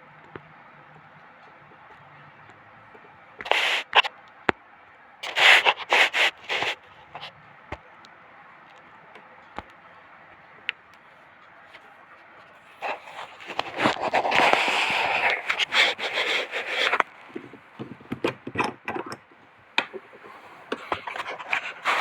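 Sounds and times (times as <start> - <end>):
scraping and rubbing: 3.4 - 4.1, 5.2 - 7.3, 12.5 - 17.6, 19.9 - 22.0.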